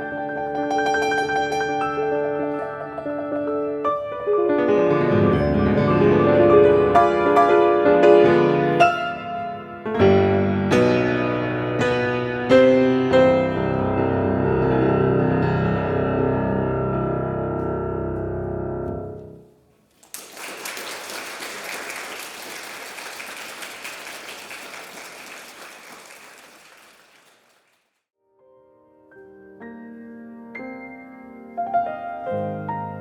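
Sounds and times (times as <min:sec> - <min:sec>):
piano chords: 0:00.0 - 0:19.6, 0:28.4 - 0:33.0
audience applause: 0:19.9 - 0:28.0.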